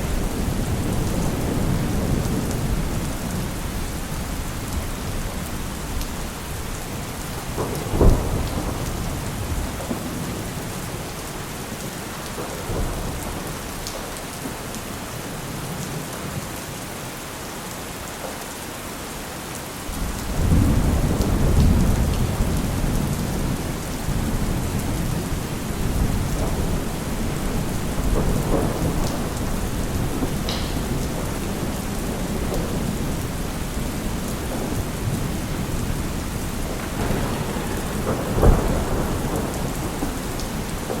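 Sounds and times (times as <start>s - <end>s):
thunderclap: 0.0s - 11.1s, 20.0s - 41.0s
steady rain: 0.0s - 41.0s
low thunder rumble: 20.0s - 41.0s.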